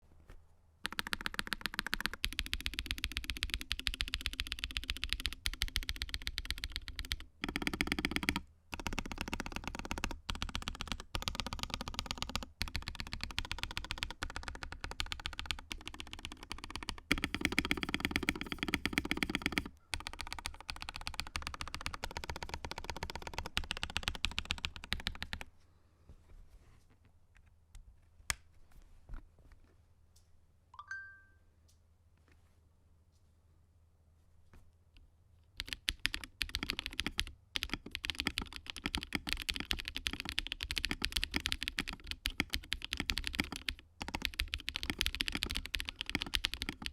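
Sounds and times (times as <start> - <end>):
fast mechanical keyboard typing: 0.8 - 25.5, 35.6 - 46.9.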